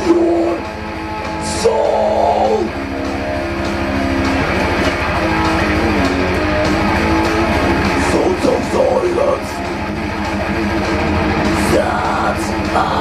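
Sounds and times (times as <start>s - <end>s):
person singing: 0.0s - 0.7s, 1.4s - 2.8s, 11.5s - 13.0s
metal band music: 0.0s - 13.0s.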